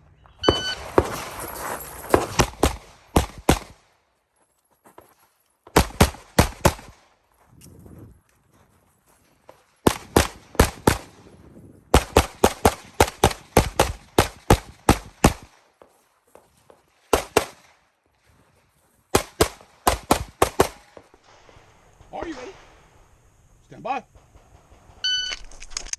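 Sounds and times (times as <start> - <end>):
rapid pistol shots: 2.1 - 3.9, 5.7 - 7.1, 9.8 - 11.2, 11.9 - 15.6, 17.1 - 17.8, 19.1 - 21.1.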